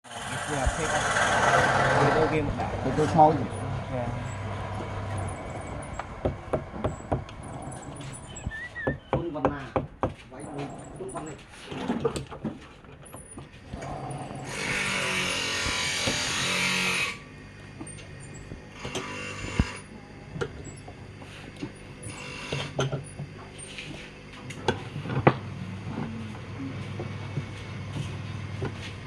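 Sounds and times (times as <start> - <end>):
rasping woodworking tool: 0.0 - 8.5, 13.6 - 17.3, 18.5 - 20.0, 21.2 - 23.0.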